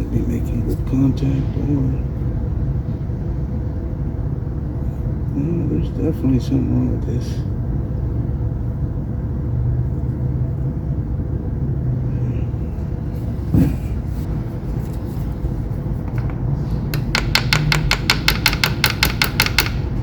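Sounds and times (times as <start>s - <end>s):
rapid sharp clicks: 17.0s - 20.0s.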